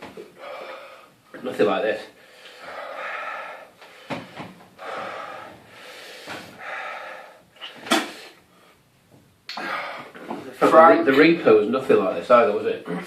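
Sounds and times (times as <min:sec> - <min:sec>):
man breathing hard: 0:00.2 - 0:01.3, 0:02.1 - 0:08.9, 0:09.5 - 0:10.4.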